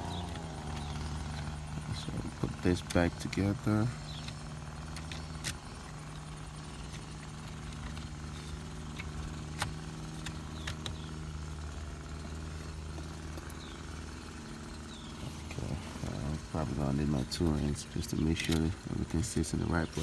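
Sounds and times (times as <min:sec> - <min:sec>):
steady low hum: 0:00.0 - 0:20.0
plastic trim pieces clicking: 0:02.8 - 0:11.2, 0:17.2 - 0:20.0.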